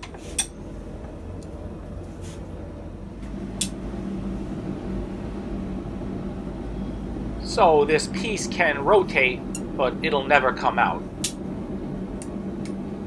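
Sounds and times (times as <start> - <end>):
higher hum: 0.0 - 13.0
low mechanical hum: 0.0 - 13.0.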